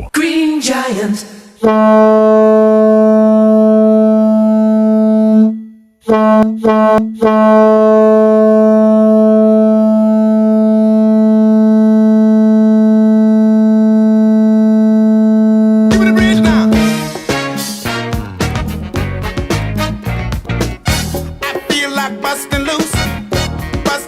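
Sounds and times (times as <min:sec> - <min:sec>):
hockey goal horn blasts: 0:01.6 - 0:18.1.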